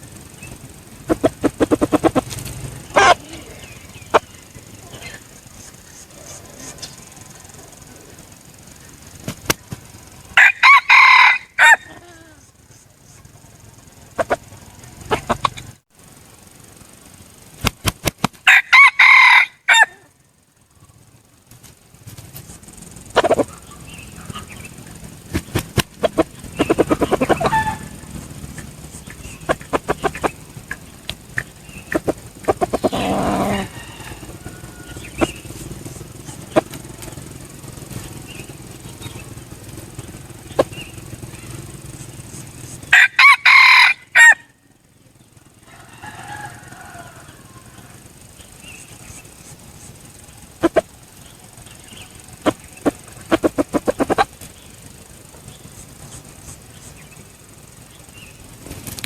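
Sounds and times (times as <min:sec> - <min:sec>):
sharp clicks: 0:00.0 - 0:10.4, 0:17.0 - 0:18.5, 0:21.5 - 0:33.3
roosters crowing: 0:00.0 - 0:17.4, 0:18.4 - 0:21.4, 0:22.6 - 0:58.8
quick run of pulses: 0:00.0 - 0:59.0.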